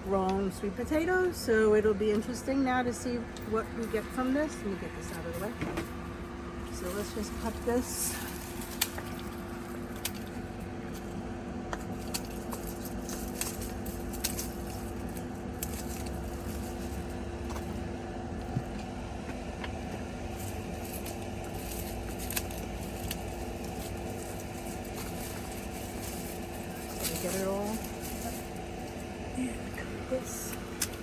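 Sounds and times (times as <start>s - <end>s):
steady low hum: 0.0s - 31.0s
rustling vines: 3.7s - 18.6s, 20.0s - 31.0s
clicks of cutting vines: 6.8s - 11.0s, 11.8s - 17.7s, 20.4s - 29.0s, 30.4s - 31.0s.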